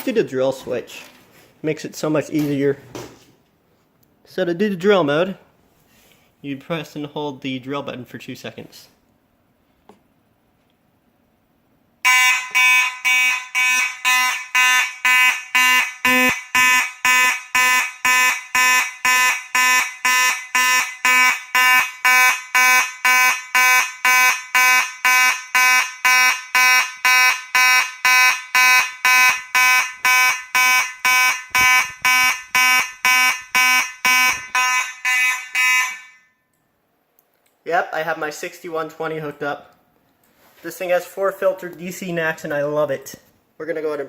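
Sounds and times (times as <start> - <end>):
pulsing fire alarm horn: 12.0 - 36.4.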